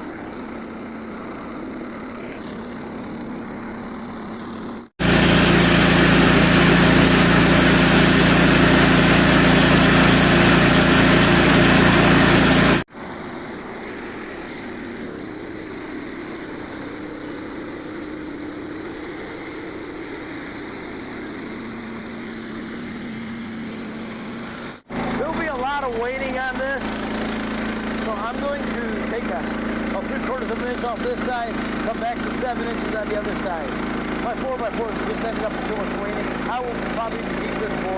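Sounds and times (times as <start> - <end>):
small gasoline engine running: 0.0 - 12.9, 19.8 - 37.9
bandsaw blade cutting wood: 5.0 - 12.9, 24.9 - 37.9.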